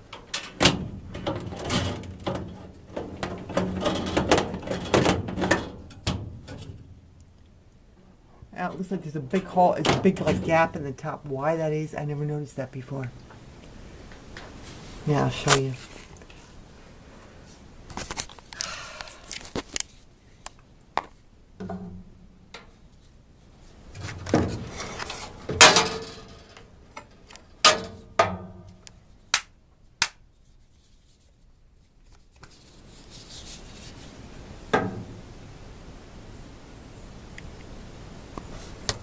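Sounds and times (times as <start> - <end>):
handling knocks and clicks: 0.0 - 7.4.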